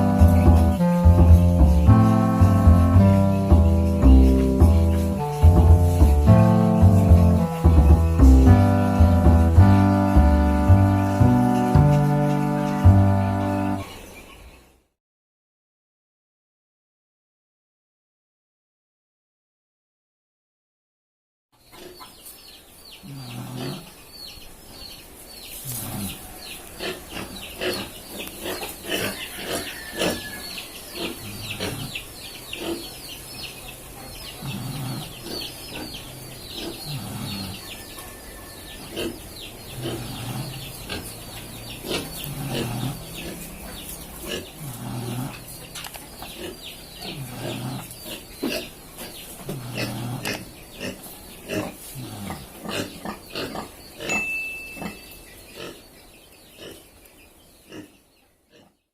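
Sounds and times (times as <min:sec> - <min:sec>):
pig snoring: 0:23.0 - 0:23.9, 0:25.7 - 0:30.4, 0:31.0 - 0:32.0, 0:34.4 - 0:35.9, 0:36.6 - 0:37.8, 0:38.9 - 0:45.6, 0:46.3 - 0:54.2.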